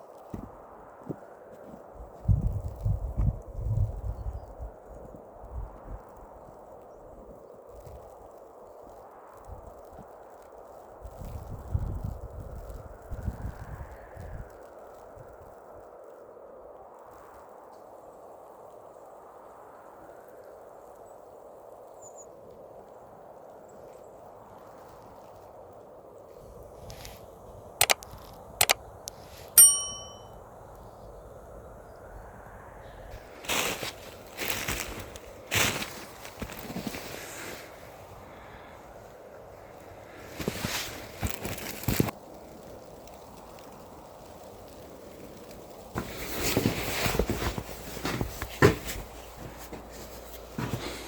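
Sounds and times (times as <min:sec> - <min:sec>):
metal object ringing: 0:29.6 - 0:30.3
rustling and knocking: 0:46.0 - 0:51.0.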